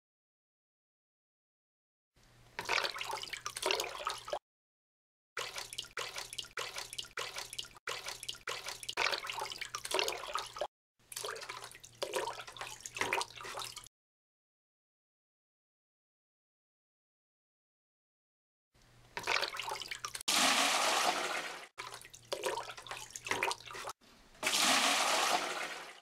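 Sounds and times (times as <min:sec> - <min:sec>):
water splashing and dripping: 0:02.6 - 0:04.4, 0:05.4 - 0:13.9, 0:19.2 - 0:26.0.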